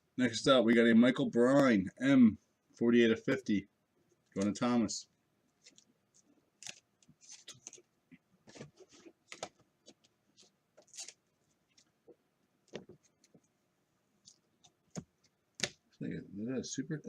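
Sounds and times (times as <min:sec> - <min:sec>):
cards clicking and rustling: 0:05.6 - 0:07.8, 0:08.5 - 0:11.2.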